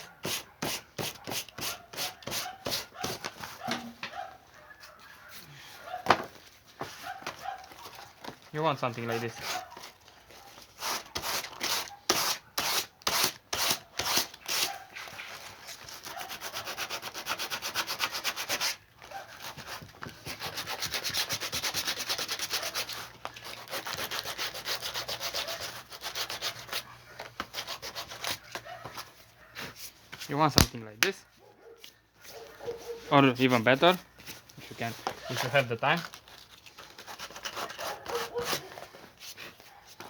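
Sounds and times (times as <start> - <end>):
sandpaper rubbing on rubber: 0.0 - 3.2, 8.9 - 10.0, 10.6 - 30.0, 34.7 - 35.9, 36.8 - 39.8.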